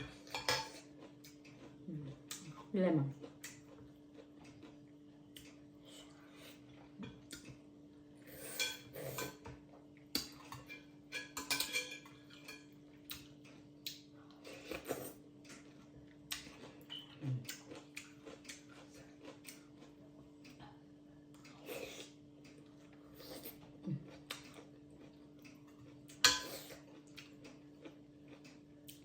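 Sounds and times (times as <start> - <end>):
utensils clinking against a bowl: 0.0 - 0.9, 8.5 - 9.6, 10.2 - 12.8, 26.1 - 26.8
faint steady hum: 0.0 - 29.0.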